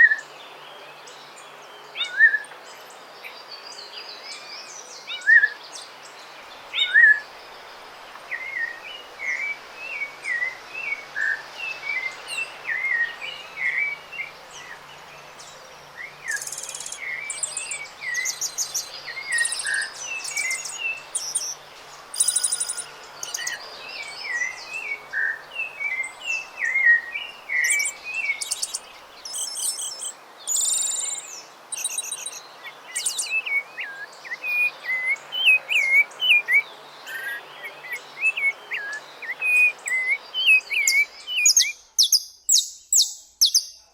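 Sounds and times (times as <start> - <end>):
high trilled bird phrases: 16.3 - 21.6, 22.2 - 23.6.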